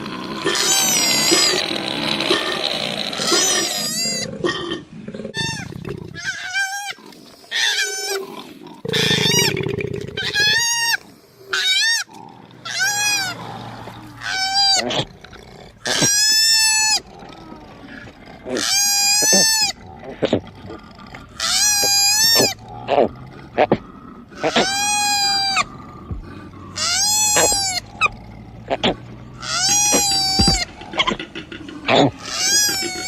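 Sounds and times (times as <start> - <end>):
koala wailing: 0.0 - 4.4, 10.2 - 15.1, 15.8 - 20.3, 21.4 - 23.8, 24.4 - 33.0
low rough grunting call: 19.6 - 33.0.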